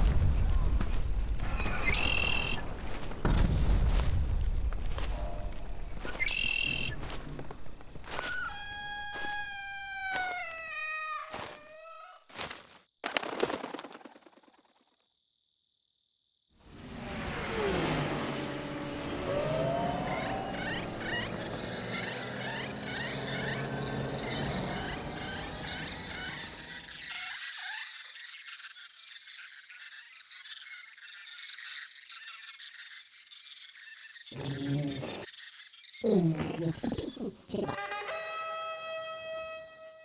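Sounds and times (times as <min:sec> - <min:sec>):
chorus of bird-like chirps: 0:00.0 - 0:12.3, 0:19.3 - 0:37.8
creature call falling in pitch: 0:08.1 - 0:12.2.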